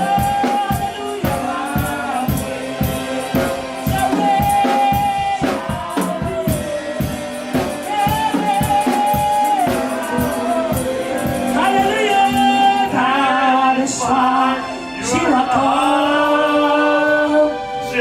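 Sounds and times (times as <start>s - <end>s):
steady drum beat: 0.0s - 14.4s
gospel singing: 0.0s - 18.0s.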